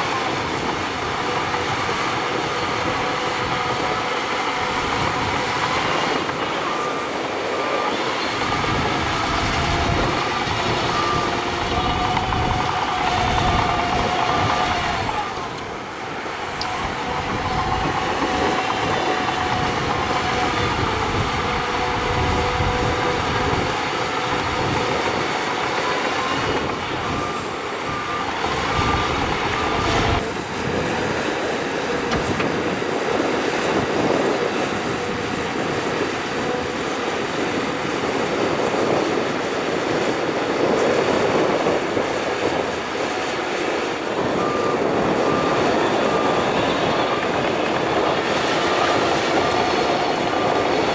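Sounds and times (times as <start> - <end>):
bulldozer diesel engine: 0.0 - 50.9
reversing alarm beeping: 0.0 - 50.9
steel tracks clanking and squealing: 0.0 - 50.9.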